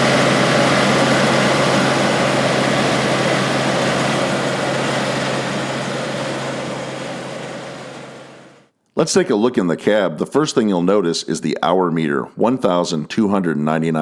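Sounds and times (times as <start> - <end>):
threshing machinery rushing: 0.0 - 8.6
diesel engine drone: 0.0 - 8.7.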